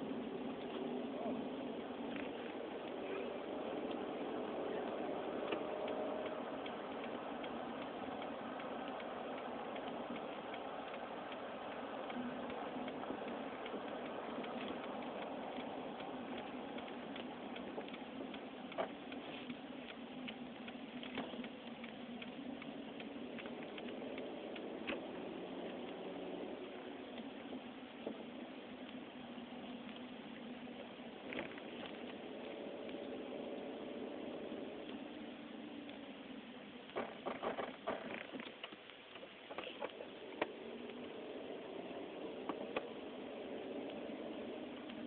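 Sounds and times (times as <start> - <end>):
light ticking: 0.0 - 45.0
vehicle noise: 0.0 - 45.0
sharp clicks: 3.7 - 30.5, 36.7 - 45.0.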